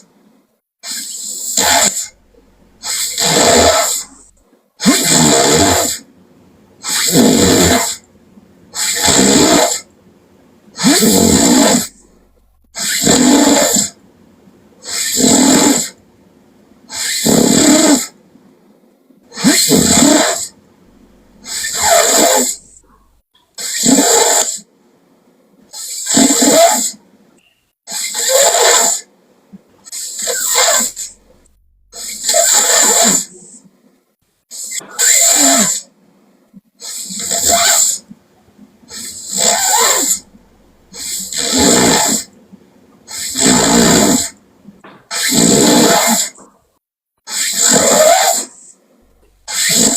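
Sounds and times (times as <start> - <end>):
loud snoring: 1.6 - 6.0, 6.8 - 8.0, 8.7 - 9.9, 10.8 - 14.0, 14.8 - 16.0, 16.9 - 18.1, 19.4 - 23.1, 30.2 - 33.3, 39.0 - 40.3, 40.9 - 42.3, 43.1 - 44.4, 45.2 - 46.4, 49.5 - 49.9.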